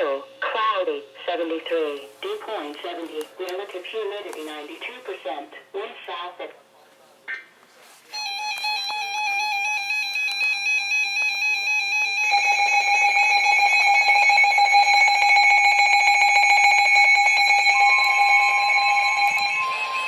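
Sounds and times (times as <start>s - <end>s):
electronic alert tone: 16.8s - 20.0s.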